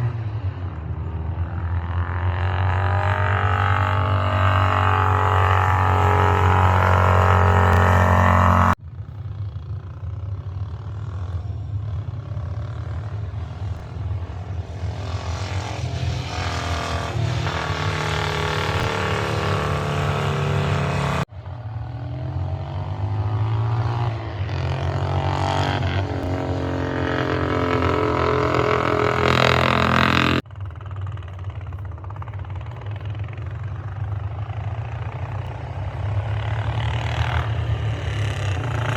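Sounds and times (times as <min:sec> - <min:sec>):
racing engines revving through gears: 0:00.0 - 0:08.8, 0:12.6 - 0:21.3, 0:22.1 - 0:30.4, 0:34.5 - 0:38.9.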